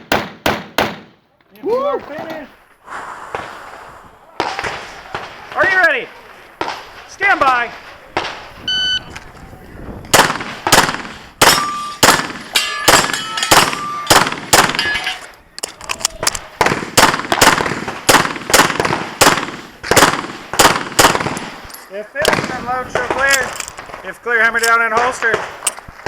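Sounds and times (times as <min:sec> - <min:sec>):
pistol shots: 0:00.0 - 0:01.2, 0:06.6 - 0:07.1, 0:10.1 - 0:15.0, 0:16.6 - 0:21.6, 0:22.2 - 0:24.1, 0:24.7 - 0:25.8
metallic ringing: 0:11.4 - 0:14.2, 0:14.8 - 0:15.3.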